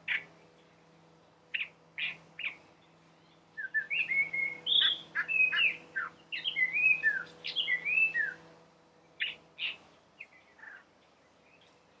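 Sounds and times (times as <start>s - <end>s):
bird singing whistled notes: 1.5s - 2.6s, 3.2s - 8.4s, 9.2s - 10.8s.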